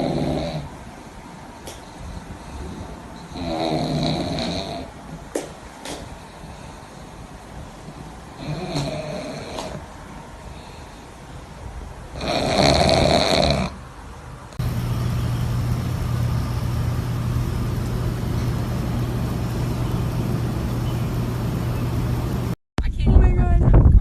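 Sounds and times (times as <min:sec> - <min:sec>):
pet snoring breath: 0:00.0 - 0:00.8, 0:01.9 - 0:04.9, 0:08.4 - 0:09.9, 0:12.2 - 0:13.8
low motor hum: 0:14.6 - 0:22.6.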